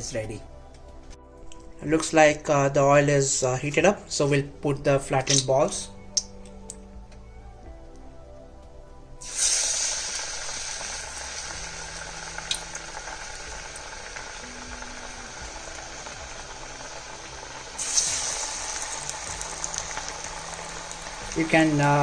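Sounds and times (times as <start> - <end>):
food deep-frying in oil: 9.2 - 22.0.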